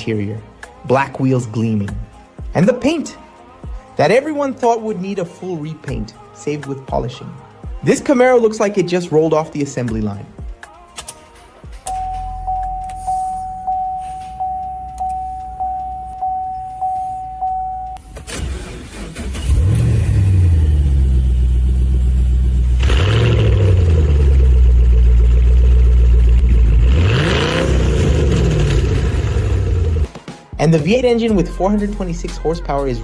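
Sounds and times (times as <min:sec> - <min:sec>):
car warning chime beeping: 0:11.9 - 0:18.3
car engine starting and revving: 0:18.0 - 0:30.1.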